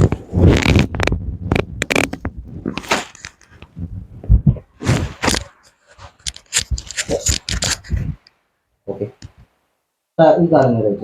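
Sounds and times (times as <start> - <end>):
rustling and shuffling: 0.0 - 8.3.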